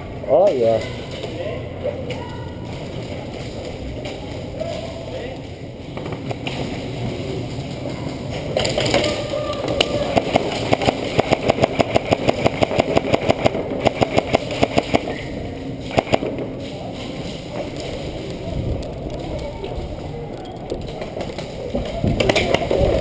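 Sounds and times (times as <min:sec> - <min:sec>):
rumble of movement and wind: 0:00.0 - 0:23.0
airsoft gun shots: 0:10.1 - 0:15.1, 0:15.9 - 0:16.4.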